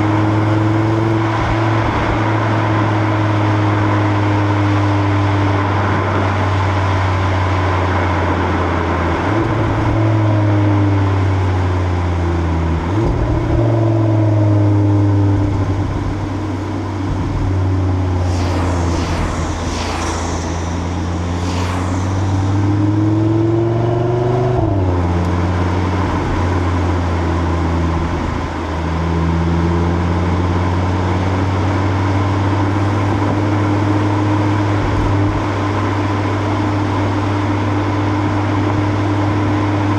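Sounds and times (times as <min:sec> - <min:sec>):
wind and tyre noise: 0:15.6 - 0:29.1
car engine revving: 0:18.2 - 0:23.5.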